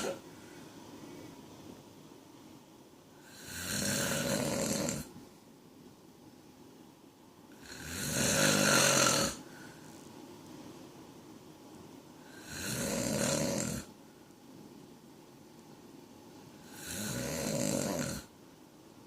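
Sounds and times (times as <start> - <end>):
man snoring: 3.2 - 5.1, 7.6 - 9.4, 12.3 - 13.9, 16.6 - 18.3.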